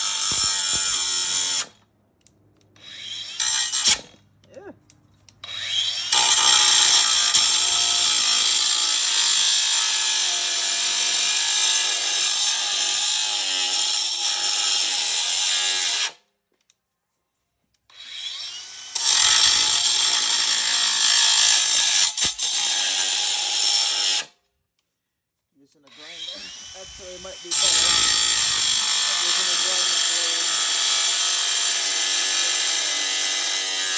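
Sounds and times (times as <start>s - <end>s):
angle grinder cutting metal: 0.0s - 1.8s, 2.8s - 4.2s, 5.4s - 16.2s, 17.9s - 24.3s, 25.9s - 33.9s.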